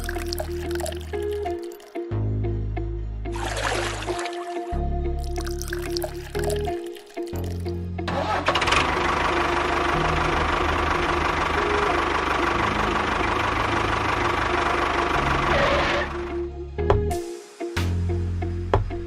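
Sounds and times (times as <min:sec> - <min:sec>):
background music: 0:00.0 - 0:19.0
small engine running: 0:08.1 - 0:16.4.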